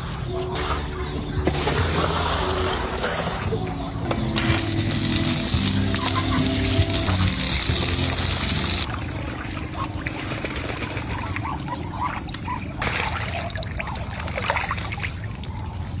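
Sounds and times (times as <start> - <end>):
ducks calling: 4.2 - 15.1
running pouring water: 4.6 - 8.9.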